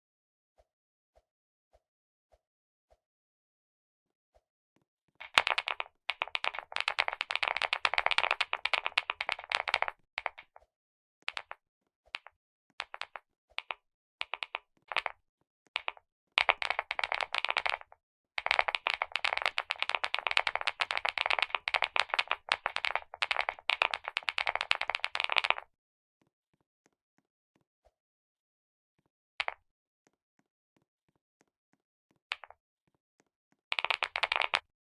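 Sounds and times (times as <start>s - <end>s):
clicky mechanical keyboard typing: 5.2s - 10.5s, 15.8s - 25.6s, 33.7s - 34.6s.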